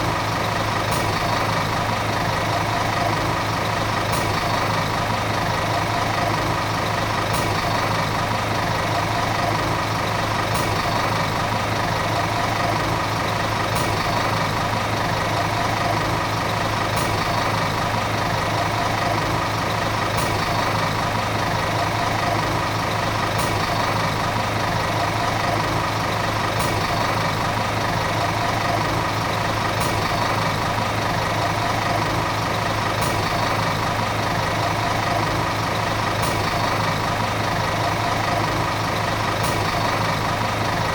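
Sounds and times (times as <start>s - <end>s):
bus diesel engine running: 0.0s - 40.9s.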